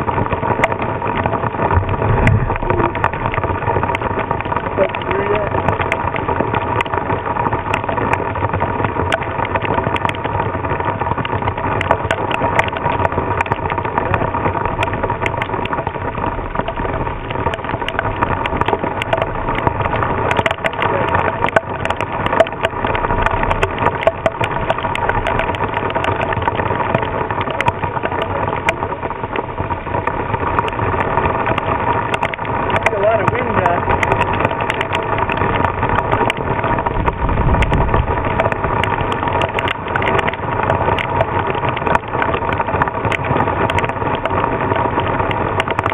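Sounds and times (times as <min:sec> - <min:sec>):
wind buffeting microphone: 0:00.0 - 0:06.5, 0:28.2 - 0:42.2
heavy rain: 0:00.0 - 0:45.9.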